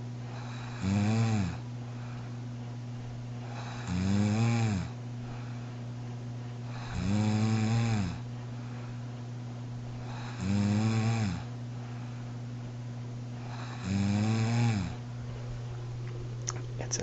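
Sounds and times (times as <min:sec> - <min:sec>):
woman snoring: 0:00.3 - 0:01.6, 0:03.4 - 0:05.0, 0:06.7 - 0:08.2, 0:10.0 - 0:11.5, 0:13.4 - 0:15.0.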